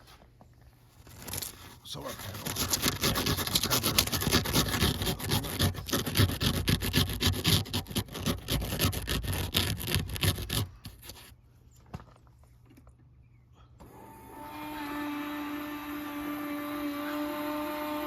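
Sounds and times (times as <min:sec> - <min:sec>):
rapid scraping and rubbing: 0:00.9 - 0:11.4.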